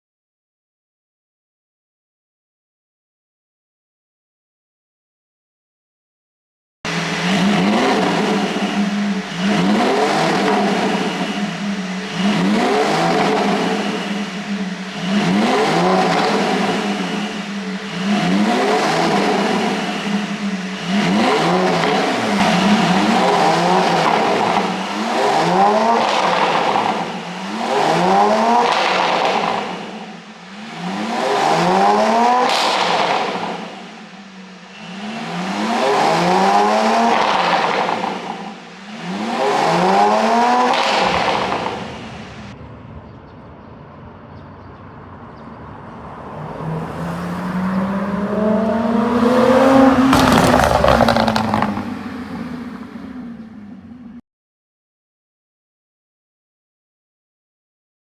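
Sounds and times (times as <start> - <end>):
car engine revving hard: 6.9 - 42.6, 45.8 - 53.4.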